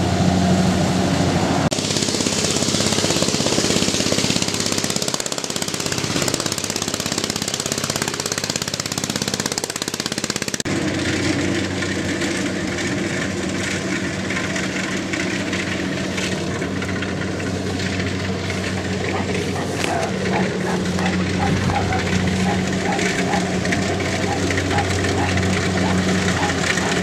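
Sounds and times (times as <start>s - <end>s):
diesel engine knocking: 1.7s - 10.7s, 14.6s - 27.0s.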